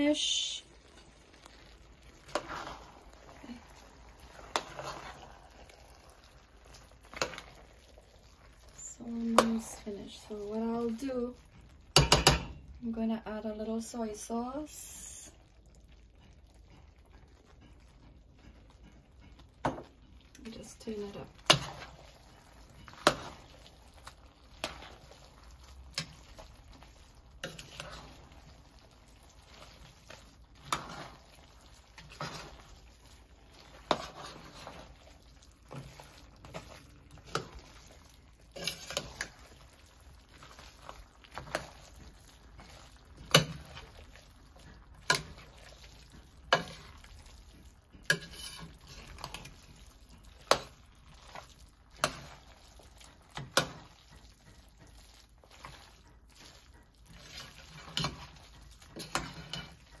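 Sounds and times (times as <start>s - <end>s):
food sizzling: 0.0s - 60.0s
spoon knocking against pot: 12.0s - 12.5s.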